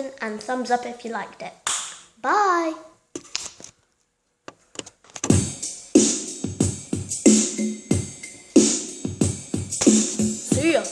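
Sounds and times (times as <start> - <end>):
electronic music with drum beat: 5.2 - 10.9.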